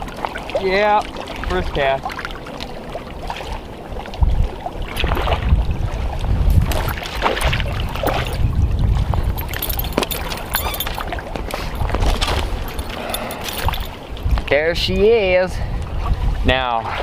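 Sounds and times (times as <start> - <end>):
wind buffeting microphone: 4.0 - 16.5.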